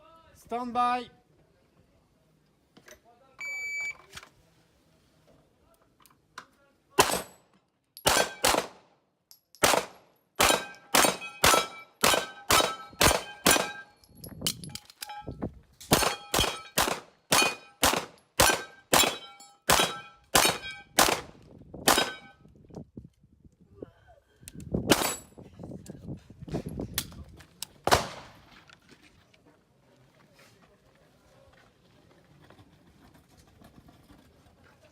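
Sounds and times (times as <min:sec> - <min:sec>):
steel targets clanging: 0:10.5 - 0:17.8, 0:18.4 - 0:21.0.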